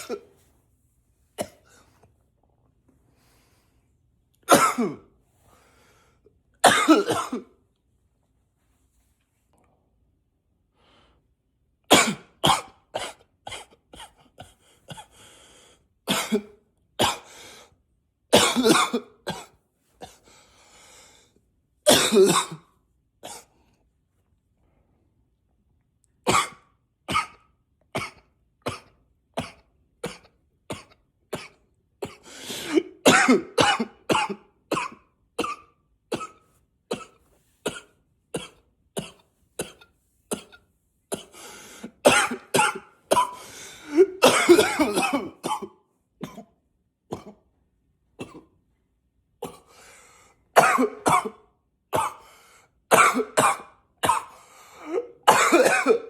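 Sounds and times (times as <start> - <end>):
man coughing: 0.0 - 0.4, 4.5 - 5.1, 6.6 - 7.5, 16.1 - 17.3, 18.4 - 20.2, 21.9 - 23.5, 28.0 - 37.1, 37.7 - 47.4, 50.6 - 51.4, 52.9 - 56.0.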